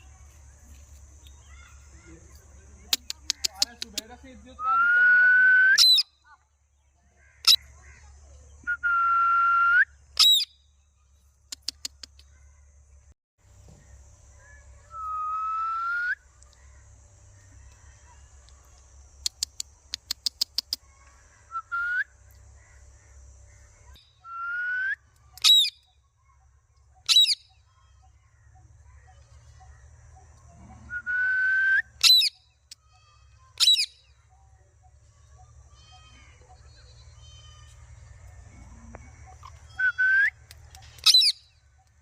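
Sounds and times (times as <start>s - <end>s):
parrot shrill calls: 25.4s - 25.7s, 32.0s - 34.0s, 41.0s - 41.4s.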